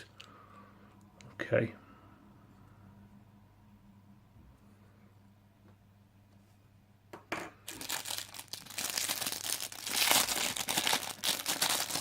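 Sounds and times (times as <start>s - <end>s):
plastic packaging crinkling: 7.6s - 12.0s.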